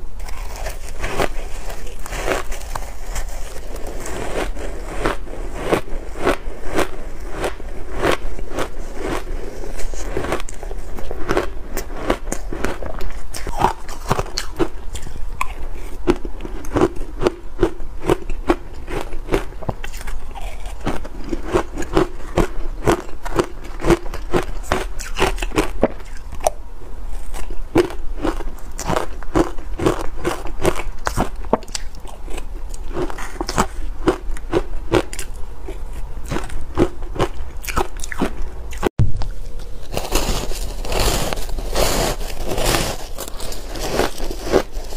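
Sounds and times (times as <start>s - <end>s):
crunchy chewing of shaved ice: 0.0s - 44.9s.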